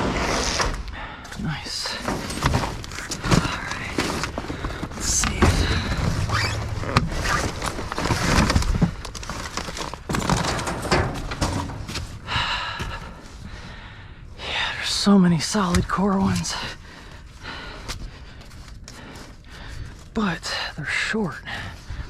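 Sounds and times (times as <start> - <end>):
metal panels thudding and scraping: 9.4 - 12.3.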